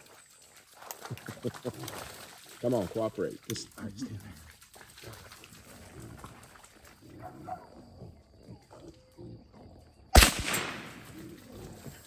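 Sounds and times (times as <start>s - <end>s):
hogs grunting: 1.0s - 10.1s
rifle shot with echo: 10.2s - 11.2s.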